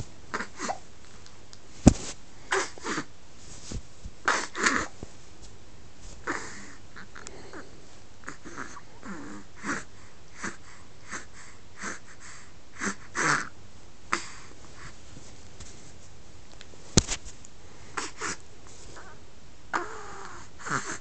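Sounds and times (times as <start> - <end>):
wheezy breaths: 6.2 - 13.5, 14.1 - 15.0, 17.6 - 19.2, 19.8 - 21.0.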